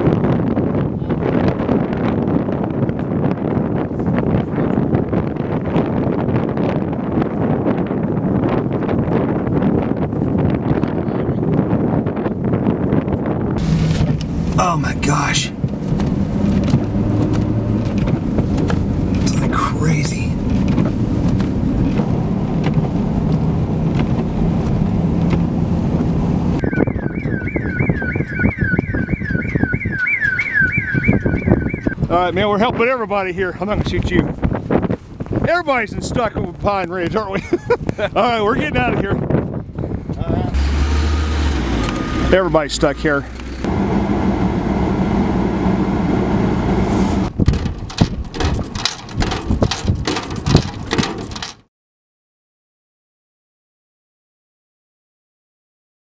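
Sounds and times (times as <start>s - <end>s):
wind buffeting: 0.0s - 51.5s
low vehicle rumble: 13.6s - 32.4s, 40.0s - 51.5s
irregular knocks and clicks: 15.6s - 19.3s, 47.4s - 51.6s
electronic siren warbling: 26.6s - 32.0s.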